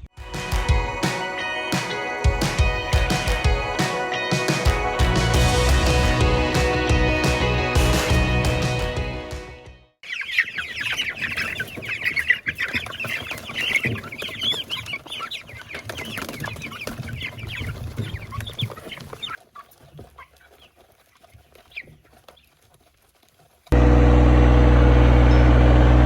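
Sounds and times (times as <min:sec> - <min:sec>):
chicks peeping: 0:10.0 - 0:22.6.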